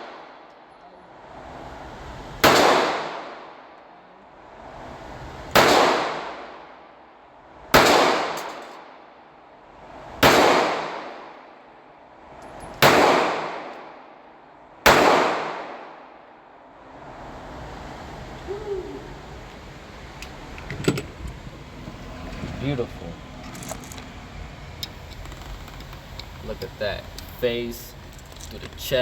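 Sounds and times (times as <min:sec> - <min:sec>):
gunshots with ringing tail: 0:02.4 - 0:03.5, 0:05.6 - 0:06.5, 0:07.7 - 0:08.6, 0:10.2 - 0:11.1, 0:12.8 - 0:13.8, 0:14.8 - 0:15.9.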